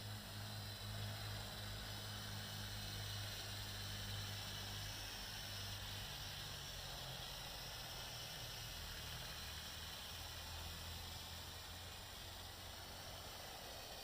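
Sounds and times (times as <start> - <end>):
hiss: 0.0 - 14.0
low steady hum: 0.0 - 14.0.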